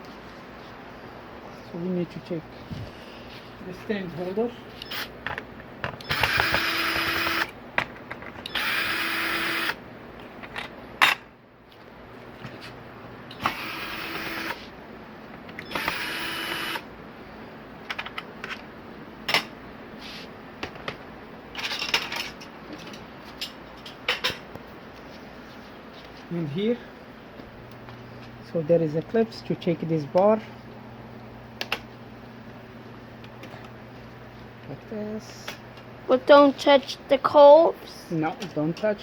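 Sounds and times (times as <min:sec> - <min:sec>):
power screwdriver running: 0:06.0 - 0:07.5, 0:08.5 - 0:09.8, 0:13.4 - 0:14.6, 0:15.7 - 0:16.8.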